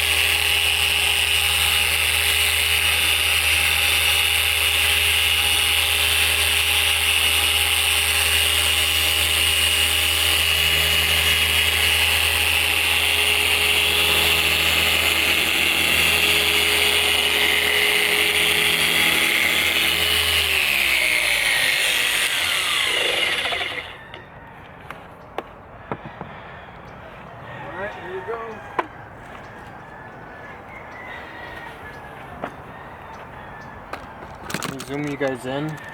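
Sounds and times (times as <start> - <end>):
electric polisher whining: 0.0 - 24.0.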